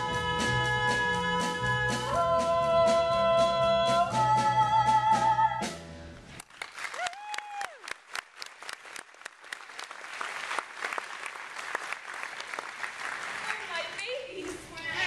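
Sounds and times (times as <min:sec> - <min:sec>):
audience applauding: 0:06.3 - 0:14.2
person cheering: 0:06.9 - 0:07.9.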